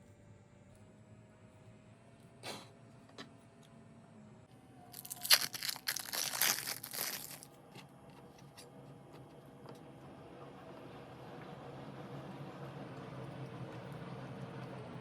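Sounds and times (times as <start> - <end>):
plastic packaging crinkling and tearing: 5.0 - 7.4.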